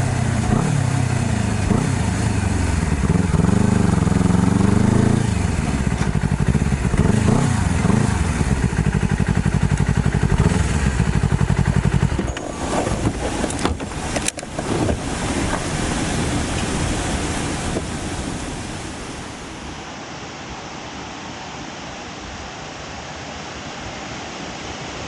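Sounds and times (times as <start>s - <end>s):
motorcycle engine revving: 0.0s - 18.7s.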